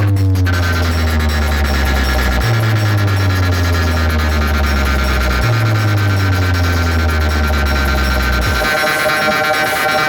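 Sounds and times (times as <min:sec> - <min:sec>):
loud electronic dance music: 0:00.0 - 0:10.0.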